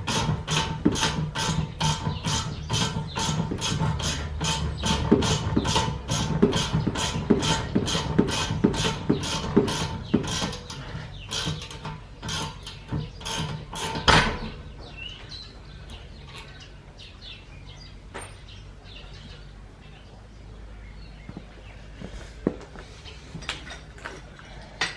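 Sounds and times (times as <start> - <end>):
loud metallic clack: 11.4 - 14.7.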